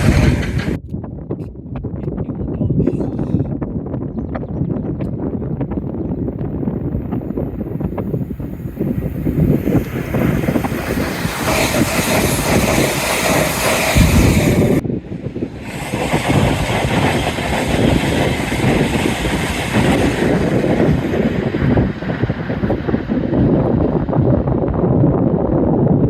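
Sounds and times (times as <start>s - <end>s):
train passing: 0.0s - 0.8s, 7.5s - 23.8s.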